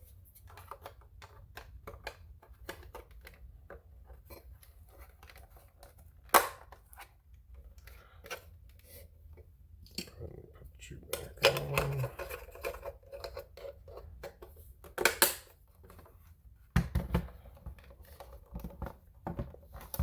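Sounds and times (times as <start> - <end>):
plastic parts rubbing and clicking: 11.1 - 16.3.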